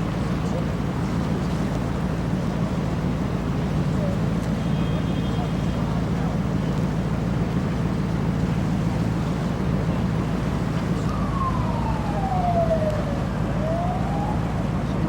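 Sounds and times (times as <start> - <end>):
low engine rumble: 0.0 - 15.0
siren wailing: 10.8 - 15.0.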